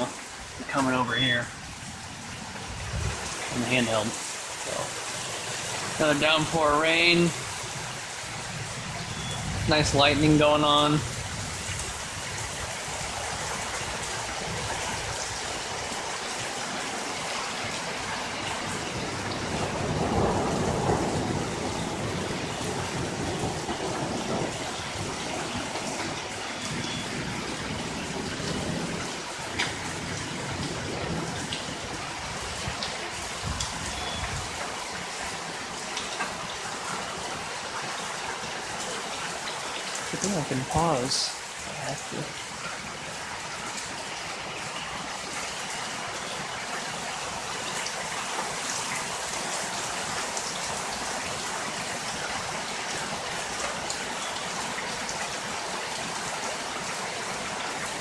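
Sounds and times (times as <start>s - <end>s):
heavy rain pouring: 0.0s - 58.0s
thunder rumbling: 5.8s - 13.8s, 18.4s - 34.6s.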